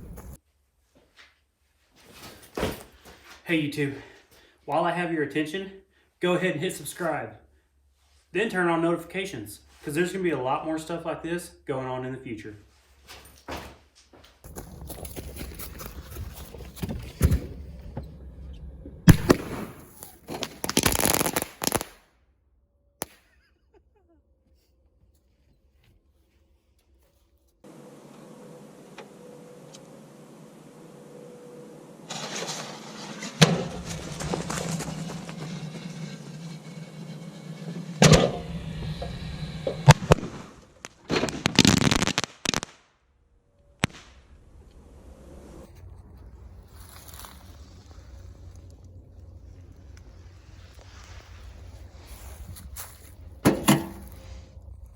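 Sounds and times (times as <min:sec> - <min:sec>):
fireworks crackling and banging: 0:14.5 - 0:22.0, 0:31.2 - 0:42.8
dense firework crackling: 0:18.5 - 0:22.1, 0:32.1 - 0:42.9, 0:43.7 - 0:53.3
steady low hum: 0:24.4 - 0:41.1, 0:43.3 - 0:54.9
firework bangs in microwave: 0:38.0 - 0:41.8.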